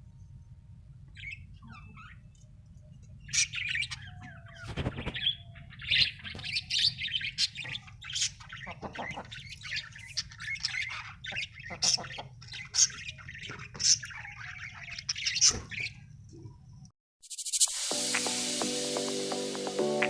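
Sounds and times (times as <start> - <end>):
parrots chirping and squawking: 1.2 - 2.4, 3.2 - 16.0.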